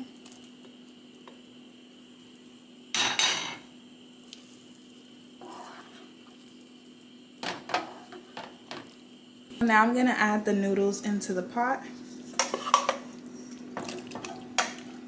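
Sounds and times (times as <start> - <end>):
faint steady hum: 0.0 - 15.0
utensil scraping a pan: 5.4 - 6.2, 12.0 - 13.0.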